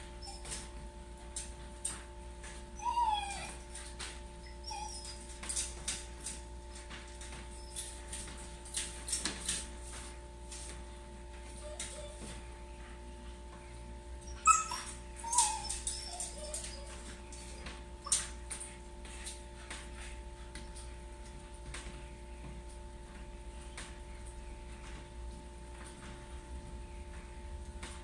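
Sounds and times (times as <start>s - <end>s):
dog whining: 0.0s - 0.8s, 2.8s - 3.8s, 4.4s - 5.4s, 11.6s - 12.5s, 14.2s - 18.3s
dog yipping: 0.2s - 0.7s, 2.8s - 3.6s, 4.5s - 5.3s, 14.3s - 17.2s.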